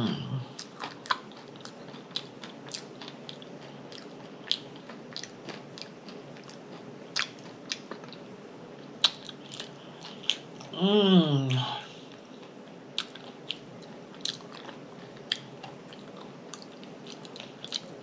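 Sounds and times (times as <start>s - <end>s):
mouth chewing food: 0.4s - 8.3s, 9.0s - 10.7s, 12.4s - 18.0s.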